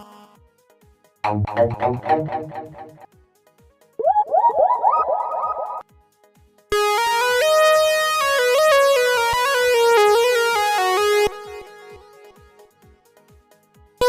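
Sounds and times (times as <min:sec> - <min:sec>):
synthesizer lead melody: 0:01.2 - 0:03.1, 0:04.0 - 0:05.8, 0:06.8 - 0:12.2.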